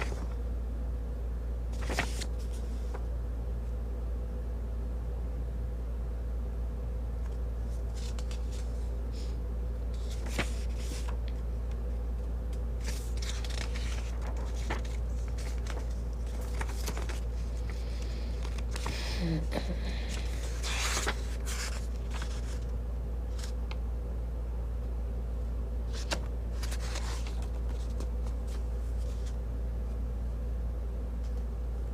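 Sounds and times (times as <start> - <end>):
paper rustling and clicks: 0.0 - 0.4, 1.7 - 3.0, 7.2 - 8.9, 10.0 - 11.9, 12.5 - 19.0, 20.1 - 22.7, 25.9 - 29.4
steady low hum: 0.0 - 31.9.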